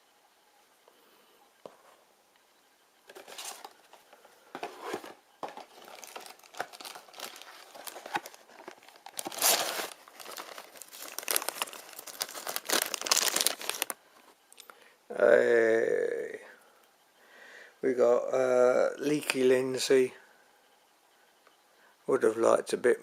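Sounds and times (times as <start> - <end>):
packaging crinkling and rustling: 3.1 - 14.0.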